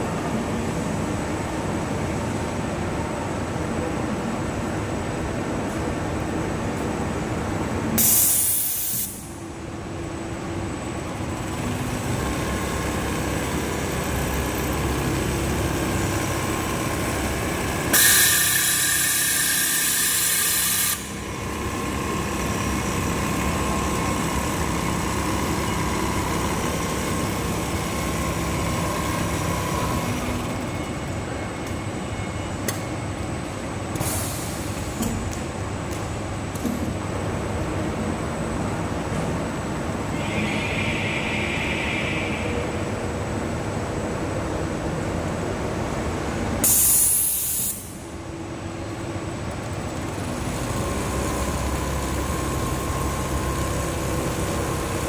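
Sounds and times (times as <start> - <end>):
compressed air hissing: 8.0 - 9.3, 46.6 - 48.0
machinery running: 10.4 - 33.1, 49.4 - 55.0.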